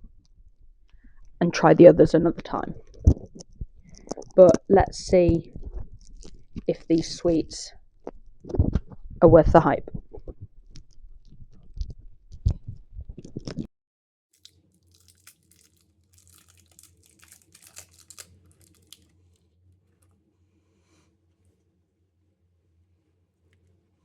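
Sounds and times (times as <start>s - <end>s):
plastic wrapper crinkling and tearing: 14.4s - 19.2s.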